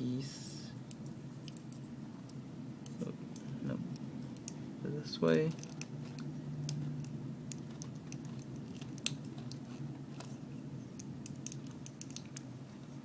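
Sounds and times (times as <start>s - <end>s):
faint low hum: 0.0s - 13.0s
plastic parts clicking and tapping: 5.3s - 9.6s.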